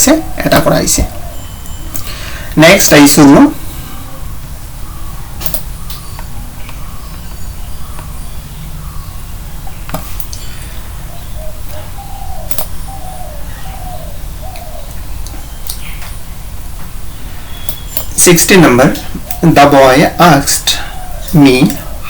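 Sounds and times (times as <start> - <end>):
steady low hum: 0.0 - 22.0
sharp clicks: 5.4 - 6.8, 12.5 - 12.7.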